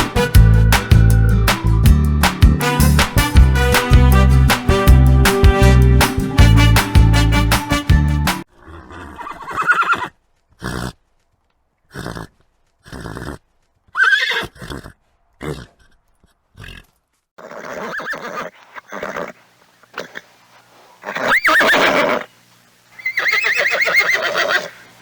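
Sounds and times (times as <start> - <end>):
horse whinnying: 8.6 - 11.0, 14.0 - 16.0, 16.6 - 19.4, 21.0 - 22.3, 23.0 - 24.8.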